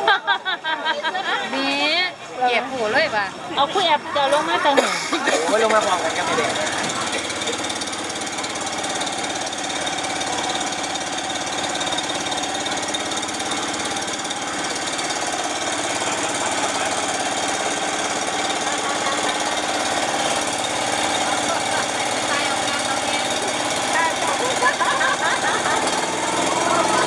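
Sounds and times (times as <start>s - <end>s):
engine knocking rattle: 3.8s - 27.0s.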